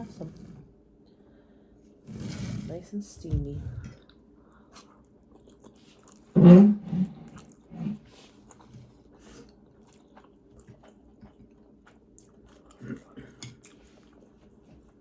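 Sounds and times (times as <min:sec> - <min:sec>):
person chewing noodles: 0:04.0 - 0:15.0.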